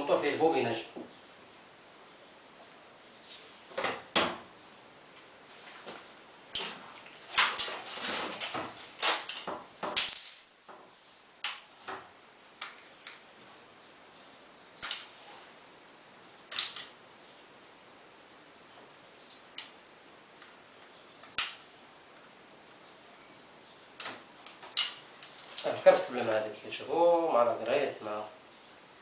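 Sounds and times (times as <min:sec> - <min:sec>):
metal parts and tools clinking: 0:06.5 - 0:08.4, 0:09.8 - 0:10.7.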